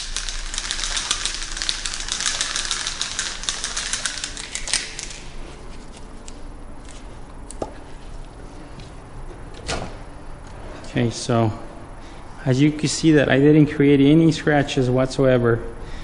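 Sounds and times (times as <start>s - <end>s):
bottle rattling while shaken: 0.0s - 5.3s.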